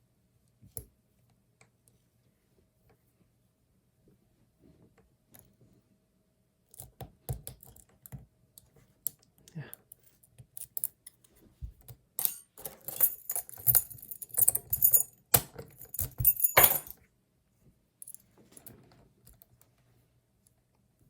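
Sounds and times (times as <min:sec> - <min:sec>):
lock picks clicking in padlock: 0:12.2 - 0:16.9.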